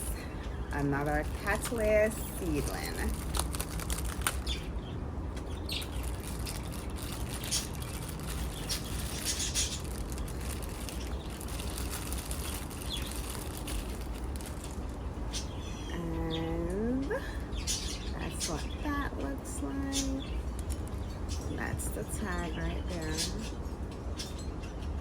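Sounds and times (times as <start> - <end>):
steady low hum: 0.0 - 25.0
packaging rustling: 2.9 - 4.6, 5.6 - 15.0.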